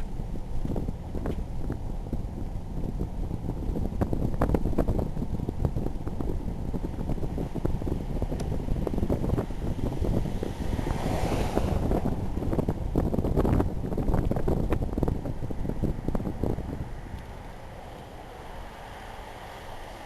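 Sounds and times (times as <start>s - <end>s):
wind buffeting microphone: 0.0s - 20.0s
hissing gust of wind: 5.7s - 20.0s.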